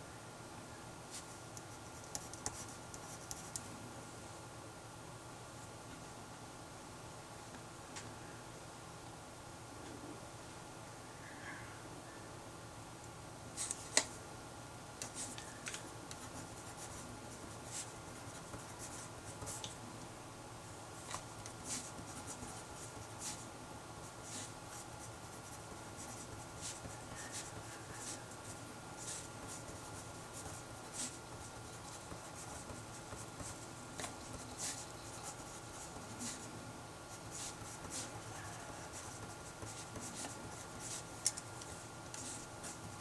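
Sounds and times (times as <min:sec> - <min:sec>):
pen scratching on paper: 0:16.1 - 0:19.7, 0:21.0 - 0:43.0.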